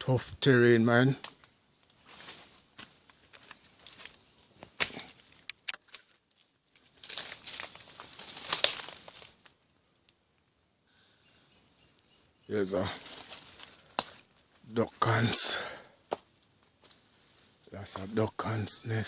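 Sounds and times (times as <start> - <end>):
twigs snapping: 1.2 - 10.2, 13.0 - 14.6
dry leaves rustling underfoot: 1.3 - 10.3, 12.8 - 14.7.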